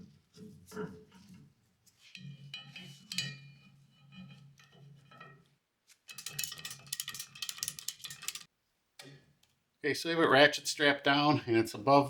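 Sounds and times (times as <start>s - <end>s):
metal clinking and ringing: 2.2s - 5.4s, 6.1s - 8.5s
ratchet strap clicking: 6.2s - 8.5s.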